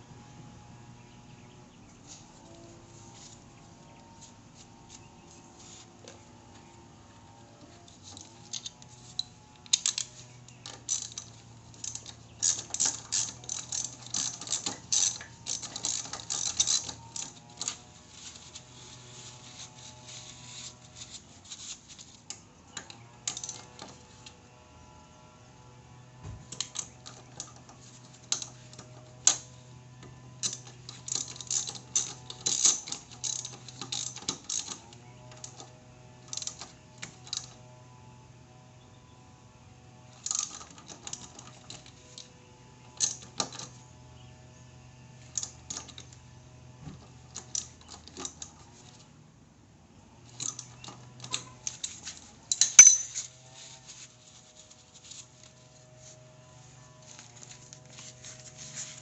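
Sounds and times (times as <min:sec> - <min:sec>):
steady low hum: 0:00.0 - 0:59.0
metallic tool clicks and rattles: 0:07.9 - 0:17.9, 0:22.3 - 0:24.0, 0:30.4 - 0:37.7, 0:40.1 - 0:43.8, 0:47.2 - 0:49.0, 0:50.3 - 0:53.5.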